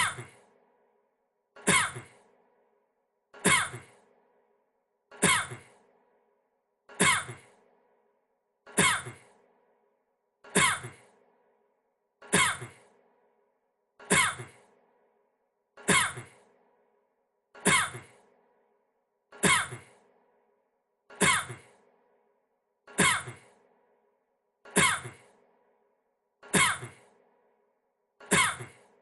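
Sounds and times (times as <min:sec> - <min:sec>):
man coughing: 0:03.5 - 0:03.9, 0:06.9 - 0:07.5, 0:10.5 - 0:11.1, 0:12.3 - 0:12.8, 0:14.1 - 0:14.6, 0:15.8 - 0:16.4, 0:19.4 - 0:19.9, 0:24.7 - 0:25.3, 0:28.2 - 0:28.9.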